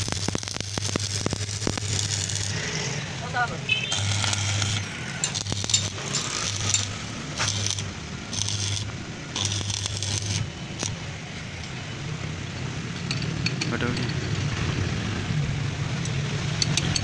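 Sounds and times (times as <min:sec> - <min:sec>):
arc welder buzzing: 0:00.0 - 0:12.9.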